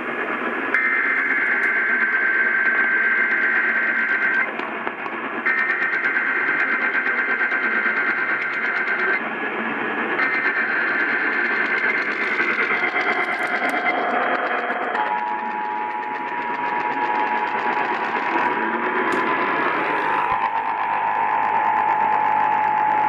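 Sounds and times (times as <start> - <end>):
radio static: 0.0 - 23.0
screechy digital data bursts: 0.8 - 4.5, 5.5 - 9.2, 10.1 - 23.0
two-tone attention signal: 0.8 - 4.5, 15.0 - 23.0.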